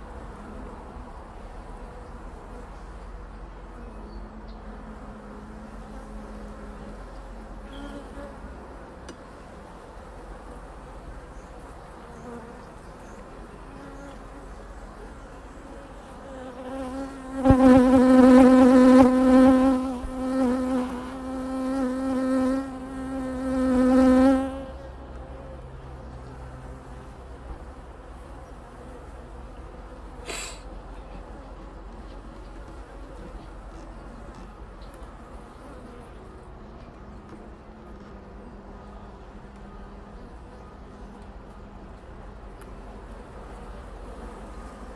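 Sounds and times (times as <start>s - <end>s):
honeybees humming at hive: 9.7s - 25.7s
single bee buzzing close by: 15.5s - 24.8s.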